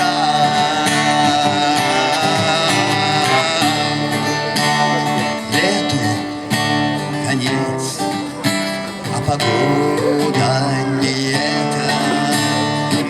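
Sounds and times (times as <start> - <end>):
acoustic guitar strumming: 0.0 - 13.0
person singing: 9.3 - 10.8.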